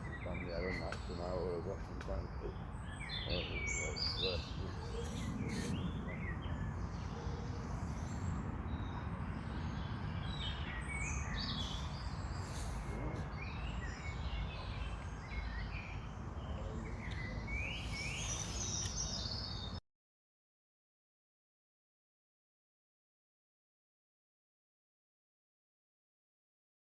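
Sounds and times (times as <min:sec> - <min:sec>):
small birds chirping: 0:00.0 - 0:19.8.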